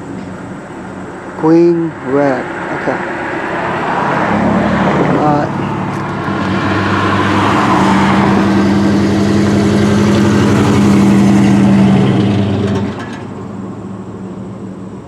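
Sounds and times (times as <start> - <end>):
car engine humming: 0.0 - 15.0.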